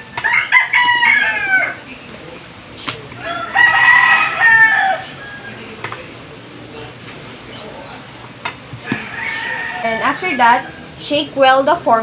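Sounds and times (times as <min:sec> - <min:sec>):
rooster crowing: 0:00.0 - 0:01.8, 0:03.2 - 0:05.8, 0:08.8 - 0:11.0.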